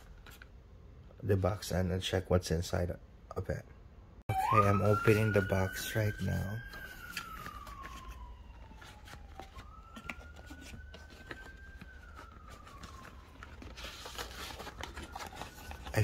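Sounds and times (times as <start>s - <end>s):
emergency siren wailing: 4.3s - 16.0s
cardboard box being opened: 6.7s - 16.0s.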